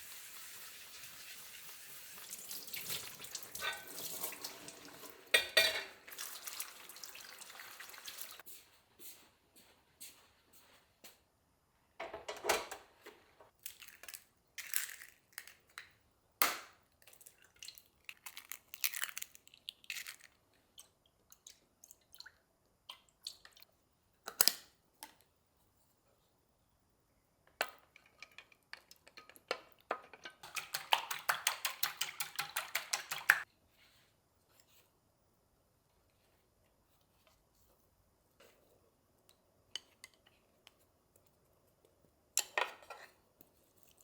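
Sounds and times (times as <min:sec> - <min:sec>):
kitchen utensils clicking and scraping: 0:02.8 - 0:06.1.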